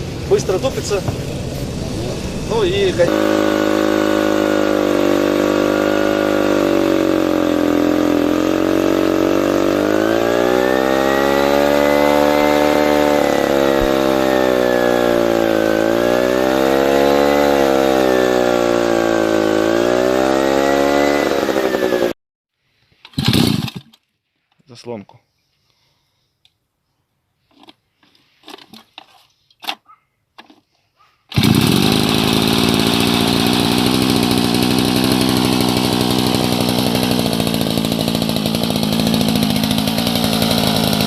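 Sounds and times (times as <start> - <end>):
chainsaw engine revving: 0.0 - 22.2, 23.1 - 23.9, 31.3 - 41.0.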